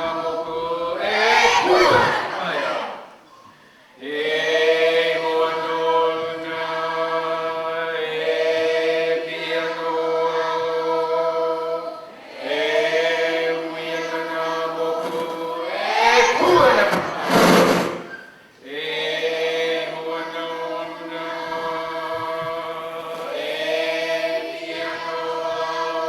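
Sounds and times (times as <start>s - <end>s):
group of voices chanting: 0.0s - 3.2s, 11.9s - 26.0s.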